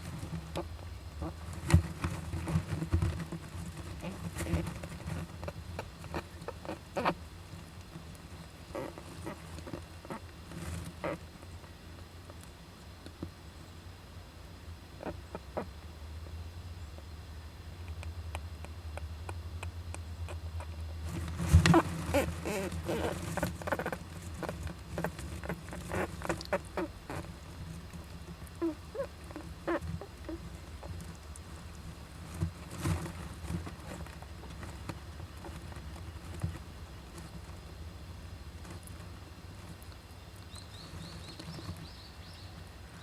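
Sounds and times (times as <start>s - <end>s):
squirrels scrabbling: 0.0s - 12.5s, 17.8s - 38.0s
steady low hum: 0.0s - 43.0s
short squeaky calls: 21.7s - 27.3s.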